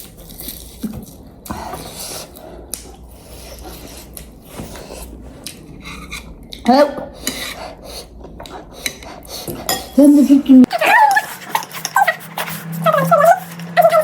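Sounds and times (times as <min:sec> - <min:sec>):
utensils scraping a bowl: 0:03.5 - 0:06.3, 0:07.2 - 0:10.0, 0:10.9 - 0:14.0.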